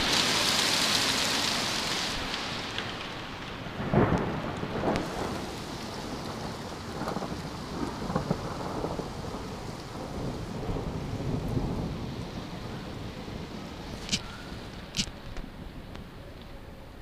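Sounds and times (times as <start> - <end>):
hard rain and hail pelting: 0.0 - 16.6.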